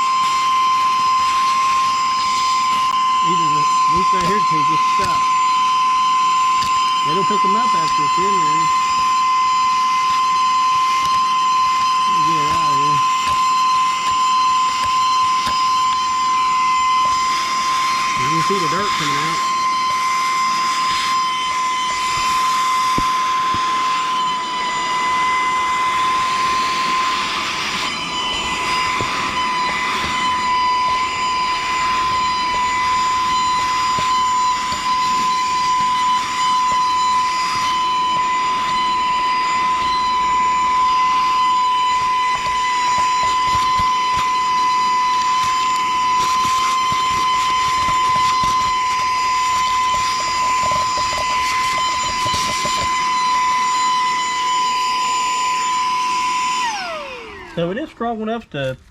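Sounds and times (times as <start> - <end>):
handheld vacuum cleaner whining: 0.0 - 58.9.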